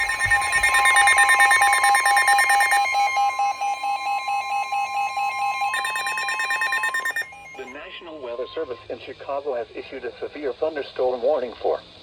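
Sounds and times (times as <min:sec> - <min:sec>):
radio alarms beeping rapidly: 0:00.0 - 0:08.8
steady warning alert tone: 0:00.0 - 0:08.8.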